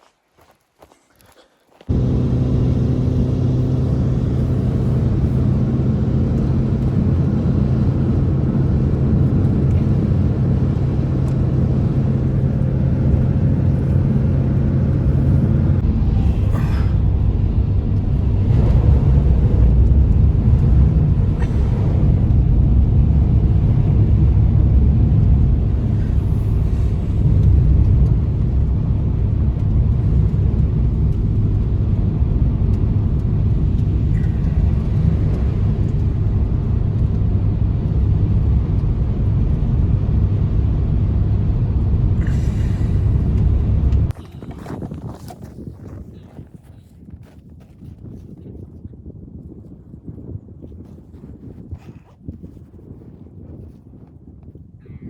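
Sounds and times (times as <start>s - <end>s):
loud low rumble: 1.9s - 44.6s
low hum with overtones: 1.9s - 45.3s.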